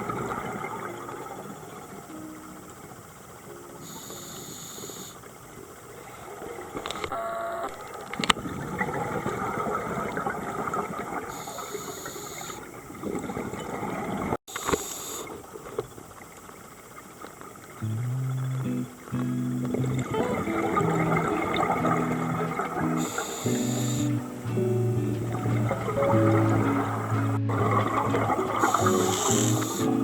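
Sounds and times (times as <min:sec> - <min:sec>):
regulator inhalation hiss: 0:03.8 - 0:05.2, 0:11.3 - 0:12.7, 0:14.5 - 0:15.4, 0:22.8 - 0:24.4, 0:28.6 - 0:30.0
bubbling exhaust underwater: 0:17.7 - 0:30.0.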